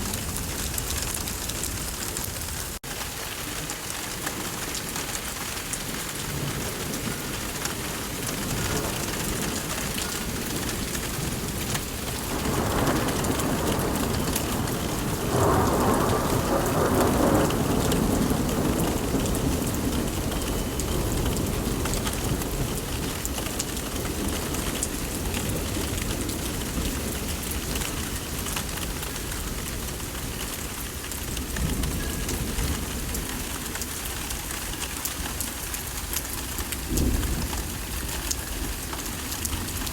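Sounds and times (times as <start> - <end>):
steady rain falling: 0.0 - 39.9
thunder rolling: 8.1 - 28.4, 36.8 - 39.9.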